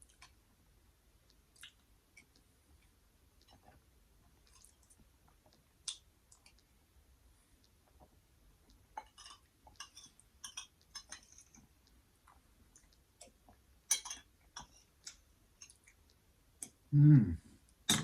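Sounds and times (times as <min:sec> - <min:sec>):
cutlery clinking against dishes: 0:13.9 - 0:14.8.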